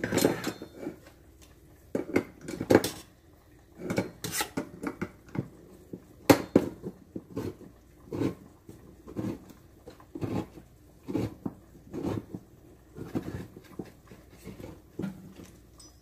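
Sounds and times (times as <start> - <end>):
cookware knocking and scraping: 0.0 - 1.2, 1.9 - 3.1, 3.8 - 5.6, 6.2 - 7.5, 13.0 - 16.0.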